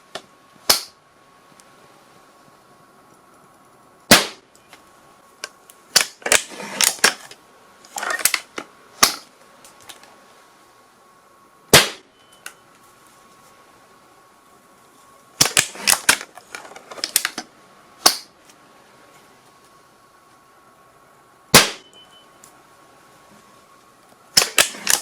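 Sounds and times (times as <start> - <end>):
sharp gunshots: 4.1 - 4.5, 11.7 - 12.1, 21.5 - 21.9.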